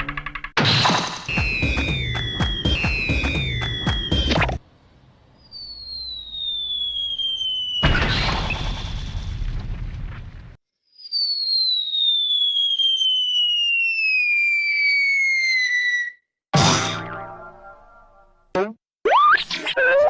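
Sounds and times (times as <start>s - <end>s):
falling bomb whistle: 1.3s - 4.6s, 5.6s - 9.0s, 10.9s - 16.3s
loud explosion: 7.8s - 10.6s.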